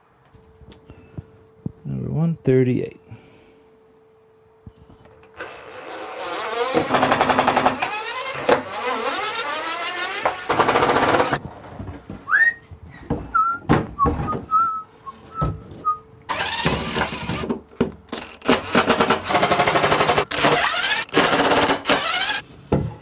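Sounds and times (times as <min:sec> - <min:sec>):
power drill running: 0:05.3 - 0:11.4, 0:16.3 - 0:17.5, 0:18.2 - 0:22.4
short high squeaks: 0:05.3 - 0:11.4.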